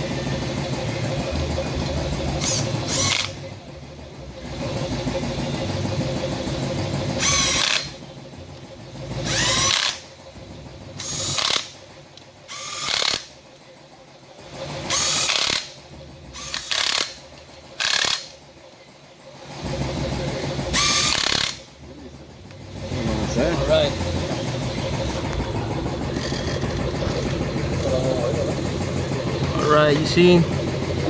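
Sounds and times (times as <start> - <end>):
steady low hum: 0.0 - 31.0
power gun whining bursts: 2.3 - 3.5, 7.0 - 8.0, 9.2 - 10.2, 11.0 - 13.4, 14.6 - 18.4, 19.7 - 21.8.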